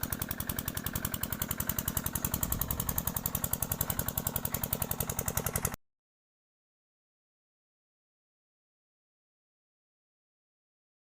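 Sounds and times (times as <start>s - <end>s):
engine idling with rapid putter: 0.0s - 5.8s.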